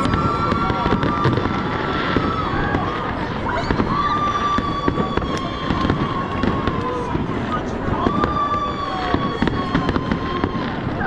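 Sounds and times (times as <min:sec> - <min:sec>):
fireworks booming and crackling: 0:00.0 - 0:11.0
fireworks whistling: 0:00.0 - 0:11.0.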